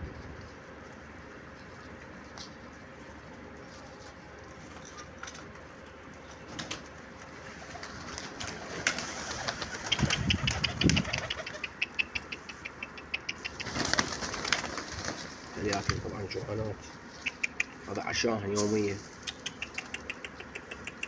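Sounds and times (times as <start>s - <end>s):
chickens clucking softly: 19.3s - 21.0s.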